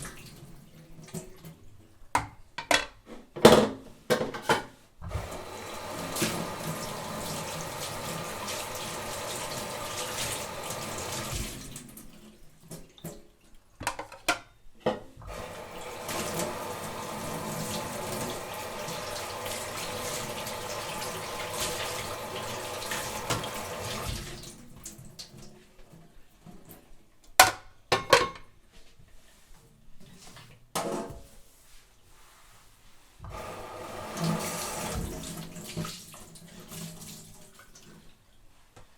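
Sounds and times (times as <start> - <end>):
tap running into a sink: 5.1 - 11.8, 15.2 - 24.9, 34.1 - 36.1
dishes clinking: 27.4 - 28.5.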